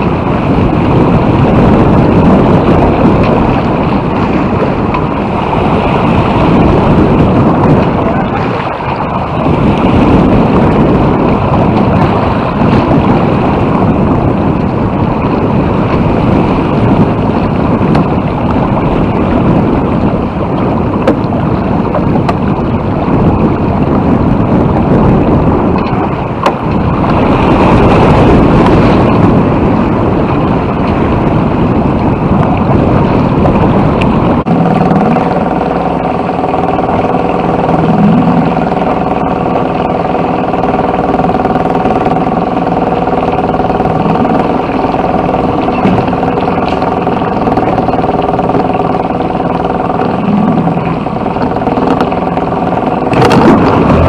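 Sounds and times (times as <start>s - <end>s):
boat engine running: 0.0s - 54.0s
rushing water: 0.0s - 54.0s
wind buffeting microphone: 0.0s - 54.0s.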